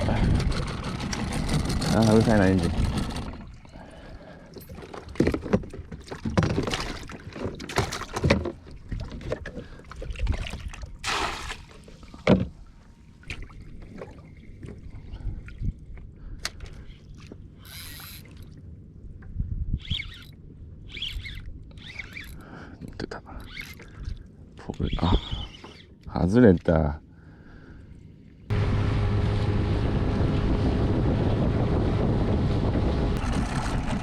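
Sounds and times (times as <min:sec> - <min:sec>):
water slapping against boat hull: 0:05.0 - 0:12.6.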